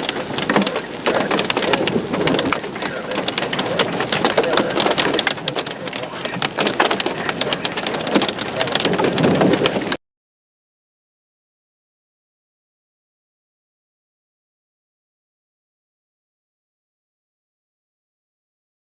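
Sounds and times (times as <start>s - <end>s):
hailstones clattering: 0.0s - 10.0s
rain downpour hiss: 0.0s - 10.0s.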